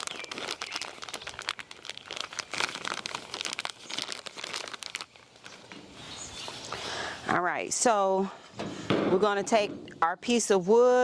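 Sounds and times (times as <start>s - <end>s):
crinkling and rustling: 0.0s - 6.8s.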